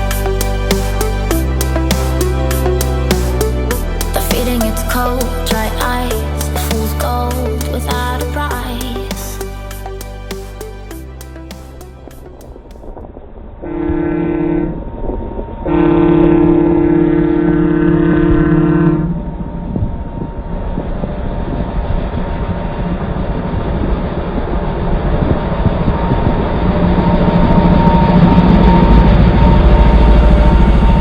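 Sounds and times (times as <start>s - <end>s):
horn blast: 0.0s - 12.6s, 13.6s - 14.8s
heavy engine noise: 0.0s - 31.0s.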